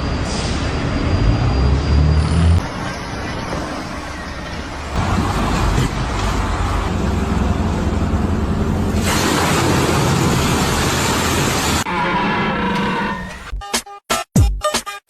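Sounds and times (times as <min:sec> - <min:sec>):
heavy vehicle engine running: 0:00.0 - 0:12.0.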